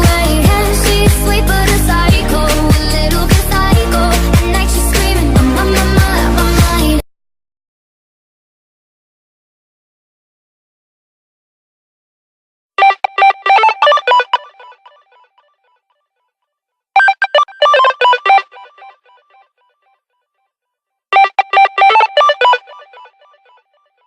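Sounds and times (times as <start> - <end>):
phone ringtone melody: 12.8 - 15.0, 17.0 - 19.0, 21.2 - 23.3.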